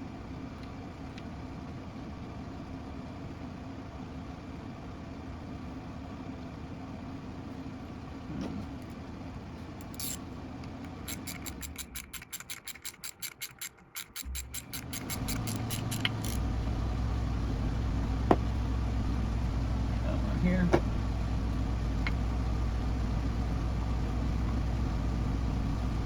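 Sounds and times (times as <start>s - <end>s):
low steady hum: 0.0s - 26.0s
ratchet wrench clicking: 9.8s - 10.2s, 10.9s - 16.4s.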